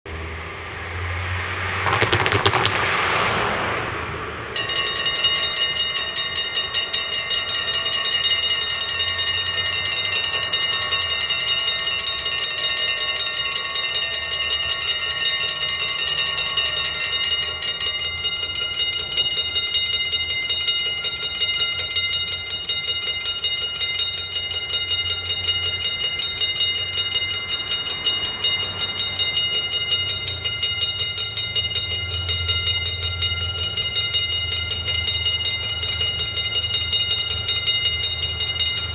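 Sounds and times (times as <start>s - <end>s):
low rumble: 0.1s - 5.5s
level crossing bell ringing: 4.6s - 38.9s.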